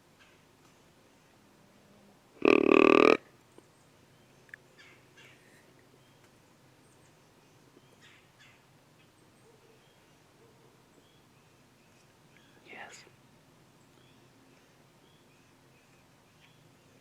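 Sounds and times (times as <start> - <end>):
deer grunt: 2.4 - 3.2.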